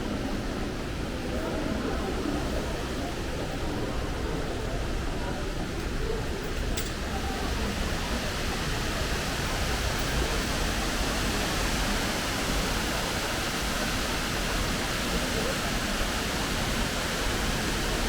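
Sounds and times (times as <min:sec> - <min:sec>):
waterfall rushing: 0:07.4 - 0:18.0.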